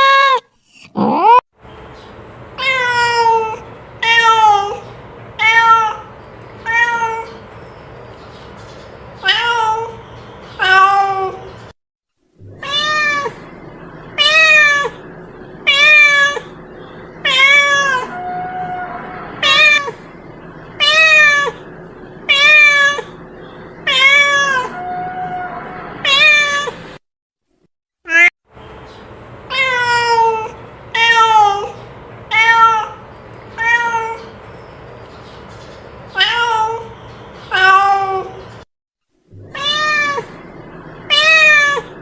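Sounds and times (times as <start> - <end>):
cat meowing: 12.5 - 13.4, 14.2 - 15.0, 15.6 - 16.5, 17.2 - 20.0, 20.8 - 21.6, 22.3 - 23.2, 23.8 - 26.8, 29.5 - 33.0, 33.6 - 34.3, 36.2 - 36.9, 37.5 - 38.4, 39.4 - 40.4, 41.1 - 42.0.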